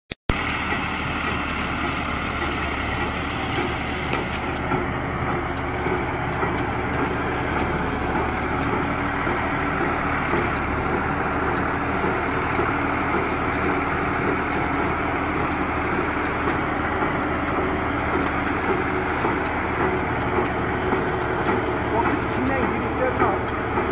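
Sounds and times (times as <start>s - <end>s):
engine hum: 0.3s - 23.9s
machinery clicks: 0.3s - 23.9s.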